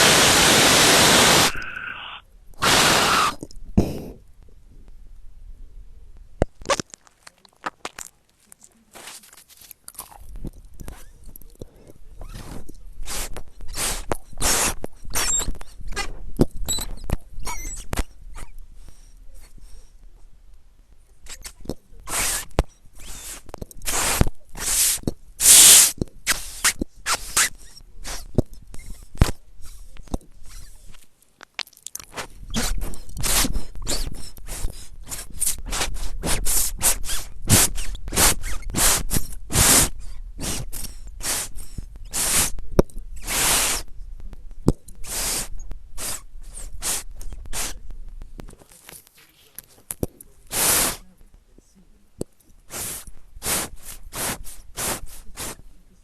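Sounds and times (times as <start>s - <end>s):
crunching and scraping: 6.4s - 12.8s.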